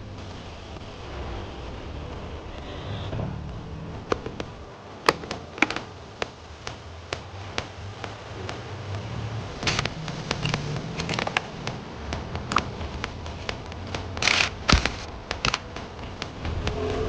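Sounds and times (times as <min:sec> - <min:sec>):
faint low hum: 0:00.0 - 0:17.0
handling clicks and rustling: 0:04.1 - 0:16.4.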